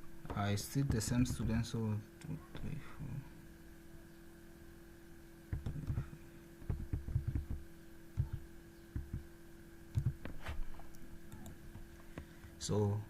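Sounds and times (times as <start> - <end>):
electrical hum: 0.0 - 13.0
computer mouse clicking: 5.6 - 6.0, 9.9 - 10.3.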